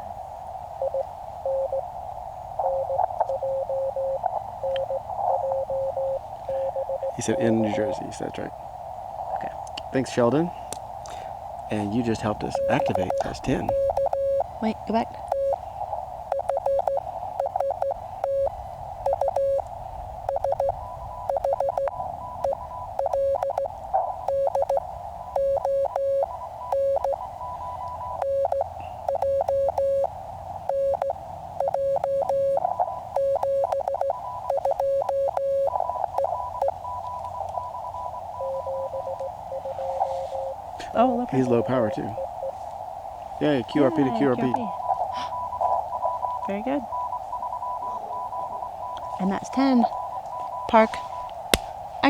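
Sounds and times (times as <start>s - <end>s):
receiver hiss: 0.0s - 52.0s
morse code tone: 0.8s - 1.8s, 2.6s - 8.0s, 11.8s - 15.6s, 16.3s - 40.6s, 43.4s - 51.1s
faint higher morse tone: 2.6s - 8.5s, 11.7s - 14.4s, 36.3s - 45.6s.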